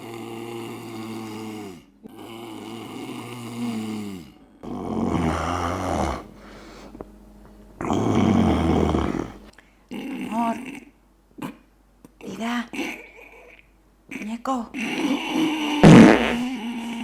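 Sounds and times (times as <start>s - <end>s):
man snoring: 0.0s - 7.1s, 7.8s - 9.5s, 15.0s - 16.8s.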